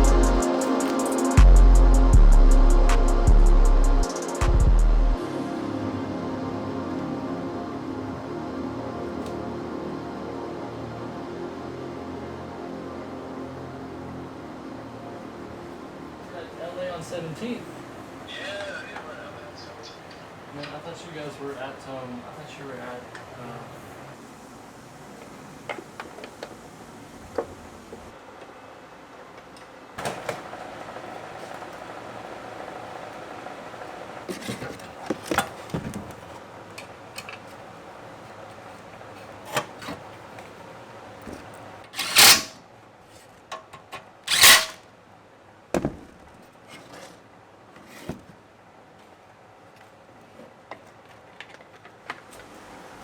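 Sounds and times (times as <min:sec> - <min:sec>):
faint steady hum: 0:00.0 - 0:39.4.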